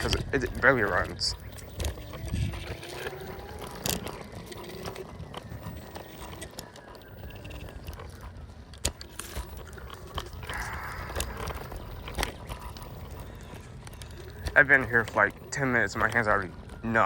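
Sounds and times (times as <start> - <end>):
short crunches and clicks: 0.0 - 17.0
steady low rumble: 10.4 - 14.4.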